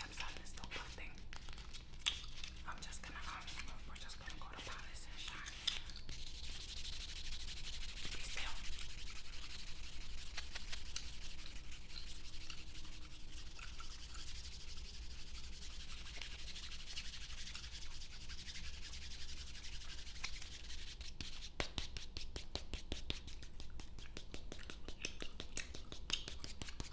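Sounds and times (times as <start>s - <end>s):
nail file rasping on fingernails: 0.2s - 18.7s.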